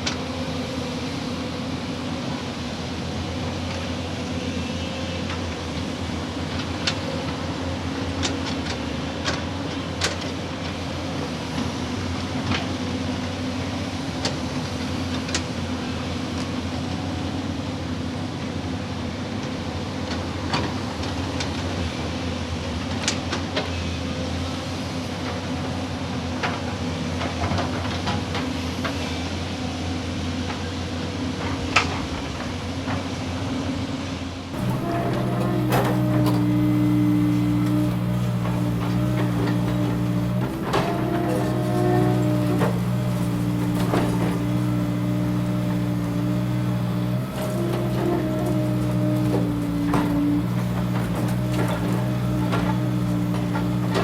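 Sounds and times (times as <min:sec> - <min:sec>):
diesel engine running: 0:34.6 - 0:54.0.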